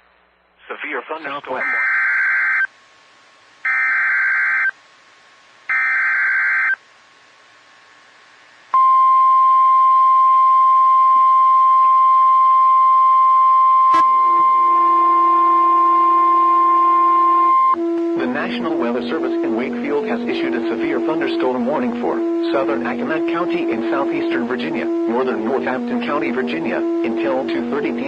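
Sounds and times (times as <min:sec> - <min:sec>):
steady attention tone: 0:08.8 - 0:28.0.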